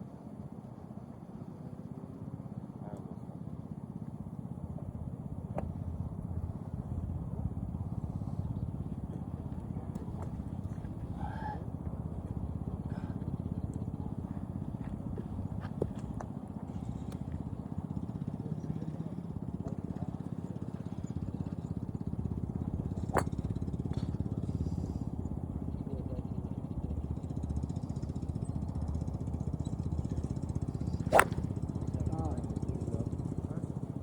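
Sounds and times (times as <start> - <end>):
golf club striking ball: 22.8 - 24.5, 31.0 - 32.0.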